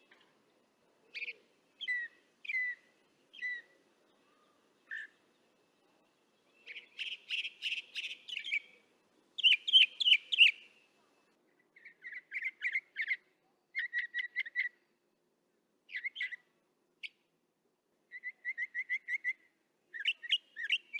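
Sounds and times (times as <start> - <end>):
mockingbird singing: 1.1 - 5.3, 6.5 - 8.8, 9.4 - 10.7, 11.8 - 13.2, 13.8 - 14.8, 15.9 - 16.4, 18.1 - 20.9.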